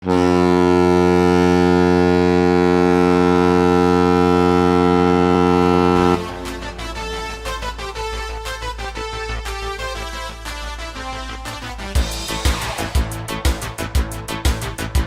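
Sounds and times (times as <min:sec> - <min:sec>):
goal horn blast: 0:00.0 - 0:07.6.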